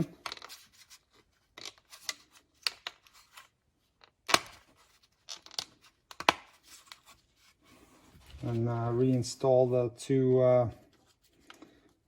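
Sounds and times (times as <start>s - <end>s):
handling rustle: 6.5s - 9.8s.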